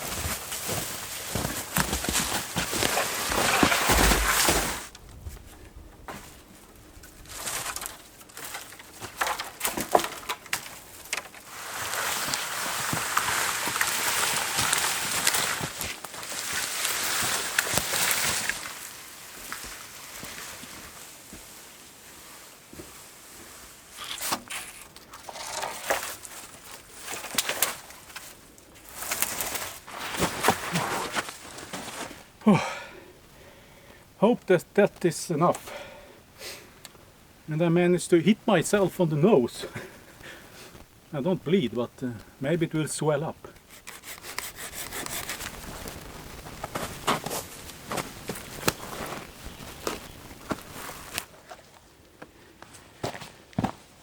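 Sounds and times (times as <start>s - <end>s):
footsteps crunching forest litter: 0.0s - 5.0s, 10.7s - 32.4s, 43.6s - 51.9s
branches rustling: 0.0s - 54.0s
dry sticks snapping: 43.6s - 49.2s.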